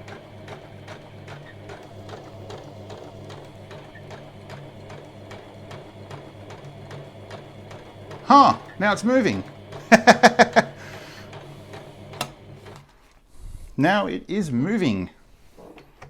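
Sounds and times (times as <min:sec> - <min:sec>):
sewing machine running: 0:00.0 - 0:13.0.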